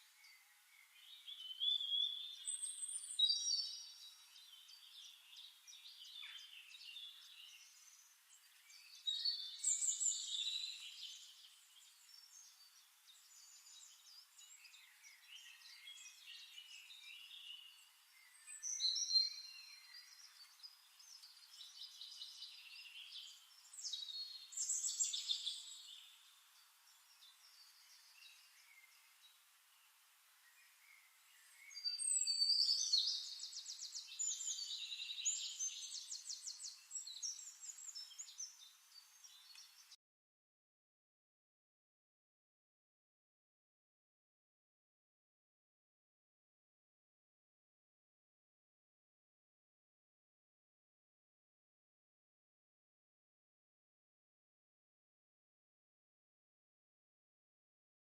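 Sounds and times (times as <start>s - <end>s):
songbirds chirping and warbling: 0.0s - 40.0s.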